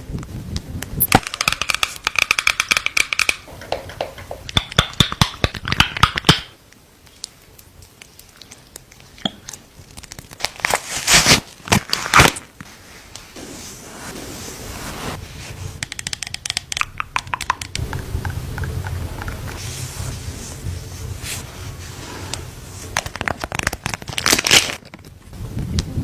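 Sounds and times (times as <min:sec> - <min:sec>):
packaging crinkling and tearing: 0:09.5 - 0:12.6, 0:22.9 - 0:25.2.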